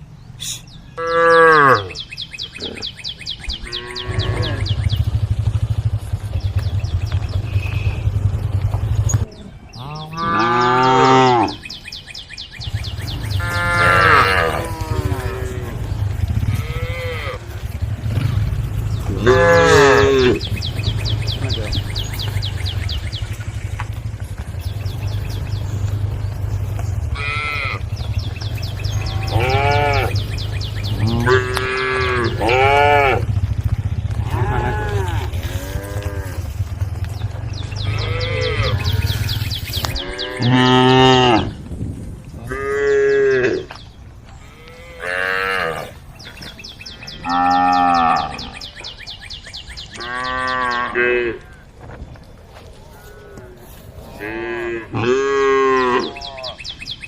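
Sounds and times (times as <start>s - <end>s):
cows mooing: 1.0s - 2.0s, 3.6s - 5.9s, 6.6s - 11.7s, 12.7s - 41.6s, 42.4s - 43.8s, 44.4s - 46.0s, 46.9s - 48.8s, 49.9s - 51.6s, 52.9s - 56.7s
low hum: 3.1s - 40.6s.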